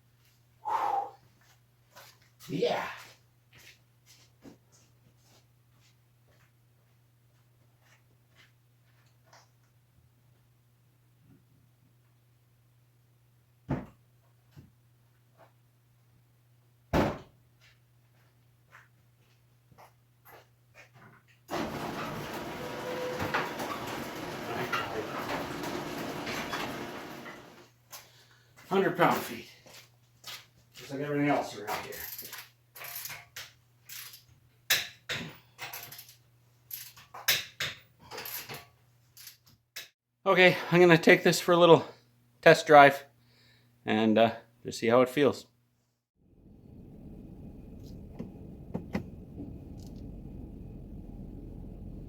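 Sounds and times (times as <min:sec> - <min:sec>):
heavy thumps: 0:47.0 - 0:52.0.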